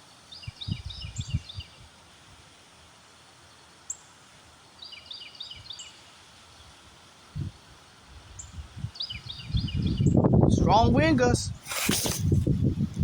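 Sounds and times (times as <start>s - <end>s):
wind: 0.0s - 13.0s
wind hitting microphone: 0.5s - 1.7s, 8.2s - 13.0s
small bird chirping: 8.4s - 10.2s.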